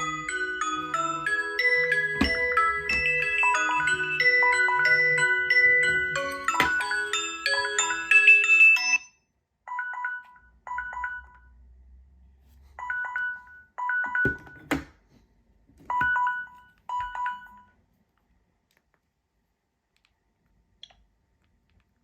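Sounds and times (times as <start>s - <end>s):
marimba-like alarm melody: 0.0s - 9.0s.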